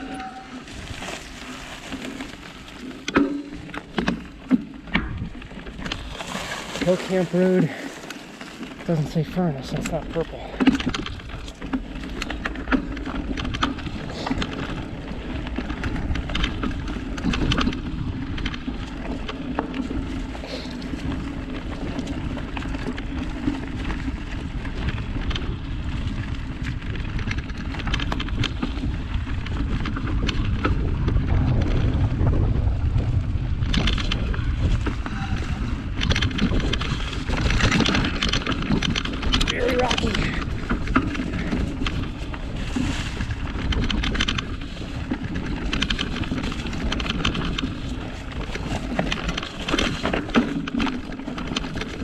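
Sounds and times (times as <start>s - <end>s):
bike frame rattling: 0.0s - 52.0s
bike tyres rumbling on trail: 0.0s - 52.0s
wind on microphone: 10.5s - 52.0s.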